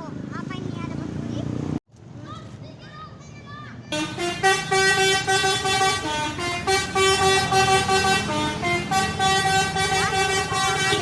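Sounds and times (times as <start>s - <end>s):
musical bus horn tune: 4.0s - 11.0s.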